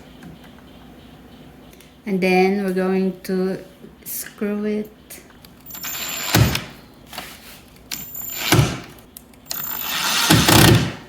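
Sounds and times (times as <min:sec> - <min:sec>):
power drill driving screws: 0:05.7 - 0:06.7, 0:08.0 - 0:08.9, 0:09.5 - 0:10.9.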